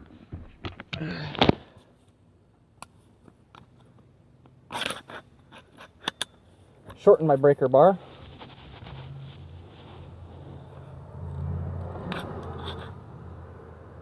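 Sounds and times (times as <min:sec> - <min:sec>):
metal scrape: 0:04.7 - 0:06.3, 0:08.0 - 0:11.0, 0:11.9 - 0:13.2.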